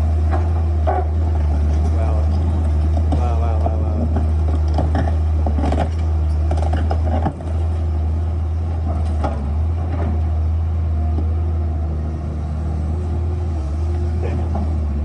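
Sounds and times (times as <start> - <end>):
diesel engine humming: 0.0 - 15.0
clanks and knocks: 1.7 - 7.7.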